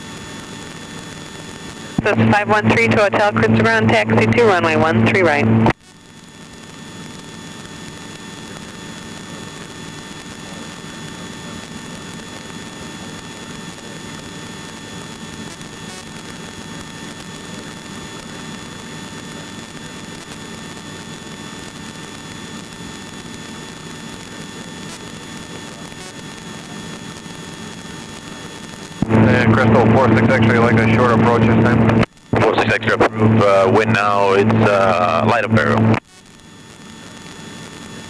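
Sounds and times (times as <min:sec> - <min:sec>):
helicopter engine and rotor drone: 0:22.5 - 0:35.9.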